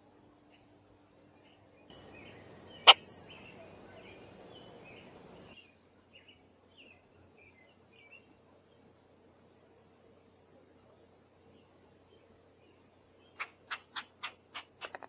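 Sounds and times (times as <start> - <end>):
small birds chirping: 1.4 - 8.3.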